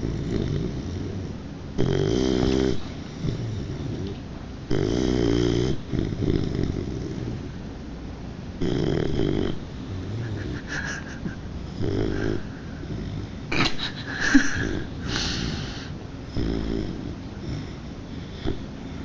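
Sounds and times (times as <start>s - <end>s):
puppy snoring: 0.0s - 7.6s, 8.6s - 19.0s.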